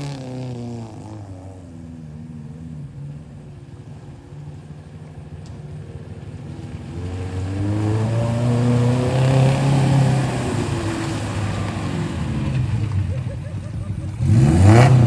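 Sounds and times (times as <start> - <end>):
vehicle engine revving: 4.2 - 15.0.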